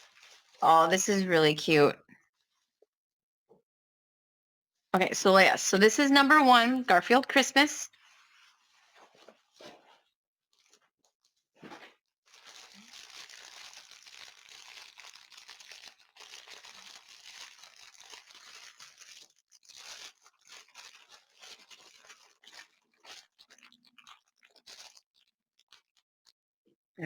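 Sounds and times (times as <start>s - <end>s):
plastic packaging crinkling: 0.0s - 1.1s, 8.0s - 26.1s.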